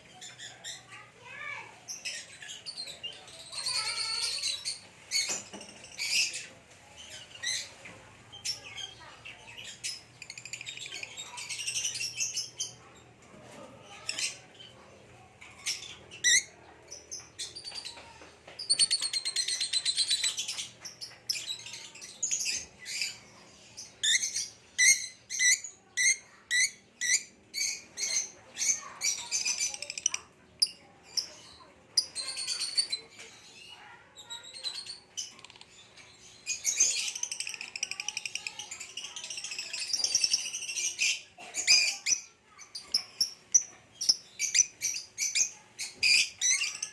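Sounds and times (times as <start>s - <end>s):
lovebirds chirping: 13.9s - 46.9s
rattling bird trill: 27.6s - 35.5s.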